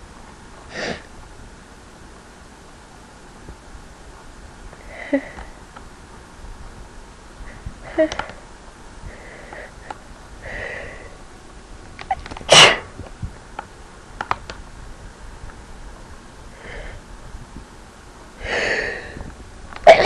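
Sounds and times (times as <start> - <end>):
person sneezing: 0.7 - 1.1, 12.5 - 12.9
breathy intake: 18.4 - 19.3.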